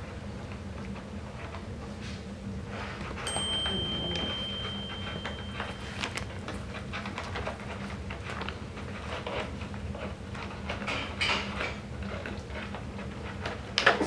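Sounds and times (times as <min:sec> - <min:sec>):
puppies clicking and rustling: 0:02.9 - 0:14.0.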